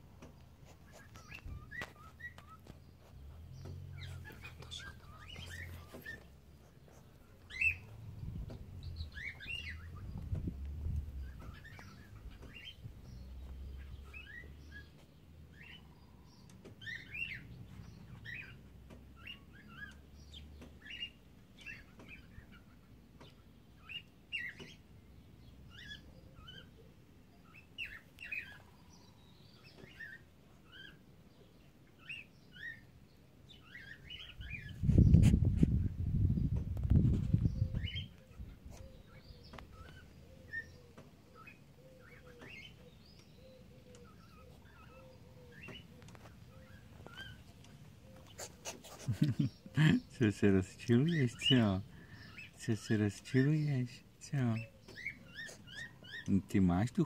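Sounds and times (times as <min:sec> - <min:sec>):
cockatiels chirping: 0:00.8 - 0:02.8, 0:04.0 - 0:06.3, 0:06.9 - 0:07.9, 0:08.9 - 0:10.2, 0:11.2 - 0:12.9, 0:13.8 - 0:15.8, 0:16.8 - 0:18.6, 0:19.2 - 0:24.8, 0:25.7 - 0:26.7, 0:27.4 - 0:28.7, 0:29.6 - 0:31.0, 0:31.9 - 0:32.9, 0:37.4 - 0:49.9, 0:54.5 - 0:56.3.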